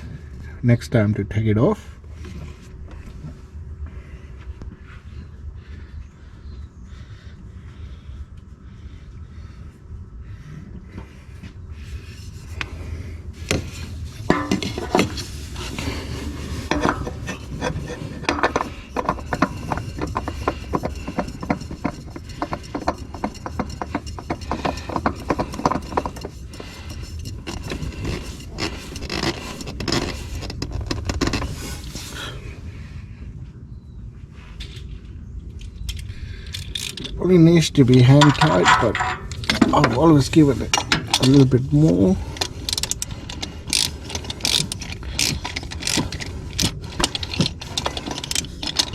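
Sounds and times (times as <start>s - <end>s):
oil filter scraping clicks: 16.6s - 31.8s.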